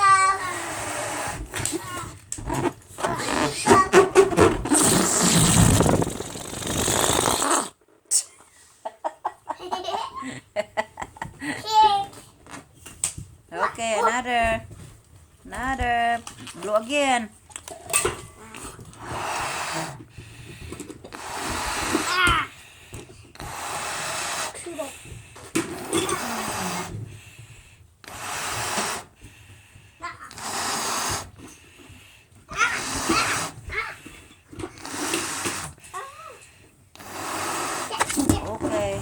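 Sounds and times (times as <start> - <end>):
balloon deflating with buzzing rasp: 0.0 - 7.8, 18.6 - 39.0.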